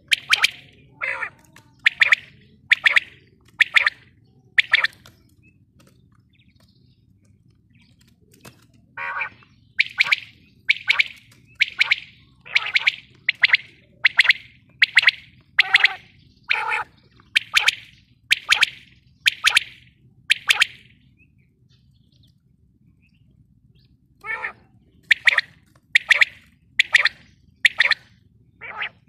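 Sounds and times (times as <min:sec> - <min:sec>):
quail calling: 0:00.0 - 0:05.1, 0:09.0 - 0:21.0, 0:24.2 - 0:29.0.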